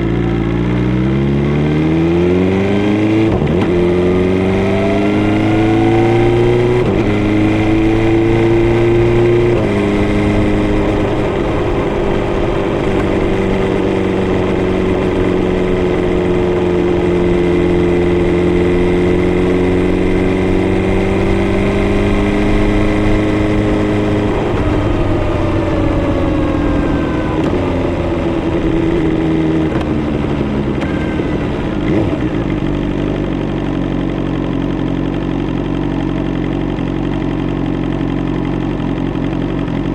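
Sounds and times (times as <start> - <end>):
motorcycle engine accelerating and cruising: 0.0 - 39.9.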